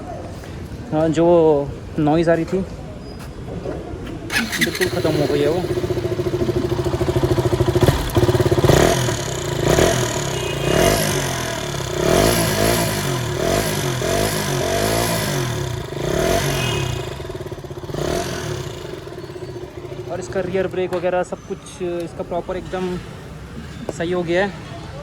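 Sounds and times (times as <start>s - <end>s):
motorcycle engine idling and revving: 4.3s - 21.3s.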